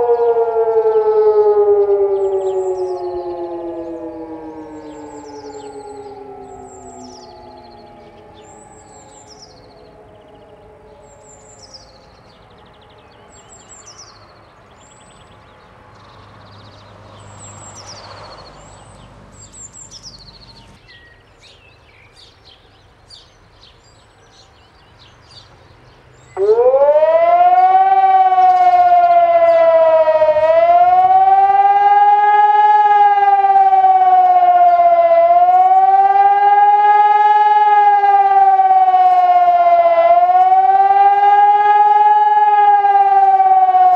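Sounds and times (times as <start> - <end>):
loud electronic siren wailing: 0.0 - 13.4, 26.4 - 43.9
faint siren tone: 0.0 - 13.7, 26.4 - 43.9
birds chirping: 0.0 - 43.9.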